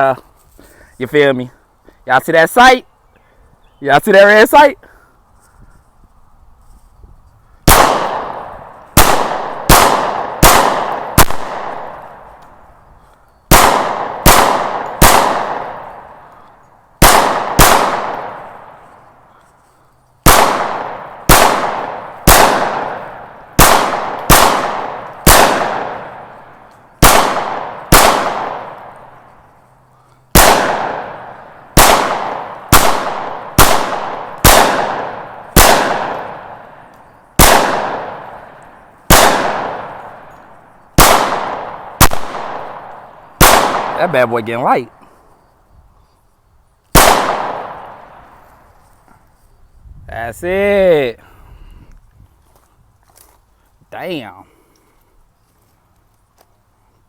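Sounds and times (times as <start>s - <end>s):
pistol shots echoing: 7.7s - 12.6s, 13.5s - 19.2s, 20.2s - 45.0s, 46.9s - 48.7s.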